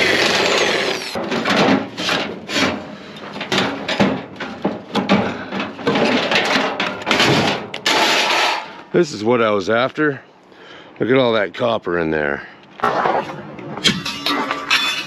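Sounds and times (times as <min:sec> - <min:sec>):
sheet metal scraping and rattling: 0:01.1 - 0:08.8, 0:12.8 - 0:15.0.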